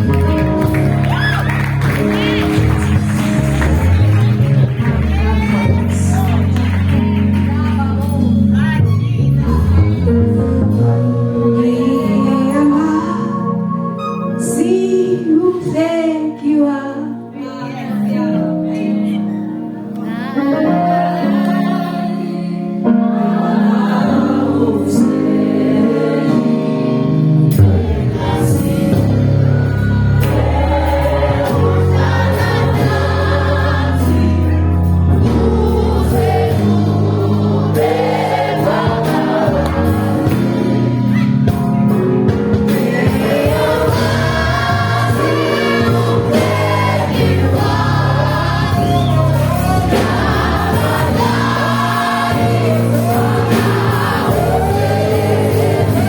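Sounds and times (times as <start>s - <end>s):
steady bass line: 0.0s - 15.0s, 27.1s - 56.0s
band accompaniment: 0.0s - 16.1s, 24.1s - 56.0s
choir singing gospel: 0.0s - 56.0s.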